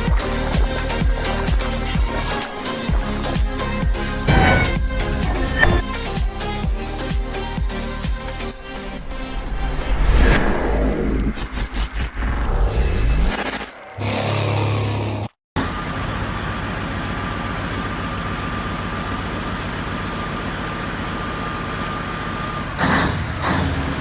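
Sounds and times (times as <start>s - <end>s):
truck engine running: 0.0s - 9.7s, 15.6s - 24.0s.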